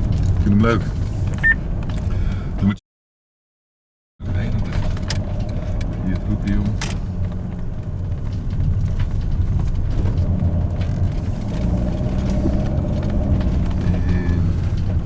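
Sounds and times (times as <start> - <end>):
engine and tyre rumble: 0.0 - 2.8, 4.2 - 15.0
light knocks and rattles: 4.4 - 15.0.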